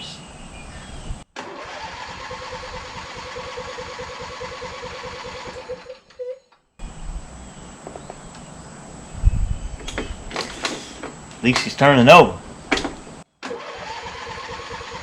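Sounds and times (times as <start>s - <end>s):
starter cranking engine: 1.4s - 6.1s, 13.4s - 15.0s.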